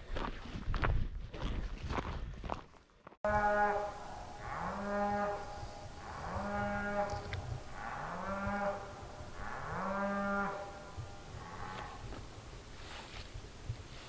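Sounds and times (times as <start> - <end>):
cattle bawling: 3.3 - 12.2.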